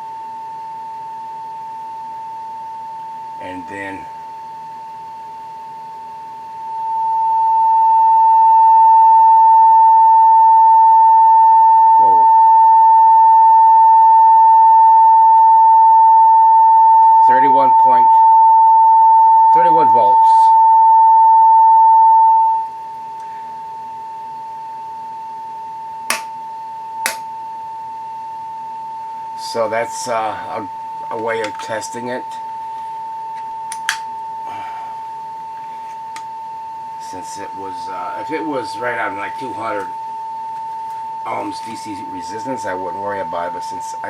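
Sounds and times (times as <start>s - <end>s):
steady pure test tone: 26.1s - 26.4s, 27.0s - 27.3s, 29.0s - 44.0s
sharp clicks: 33.7s - 34.1s.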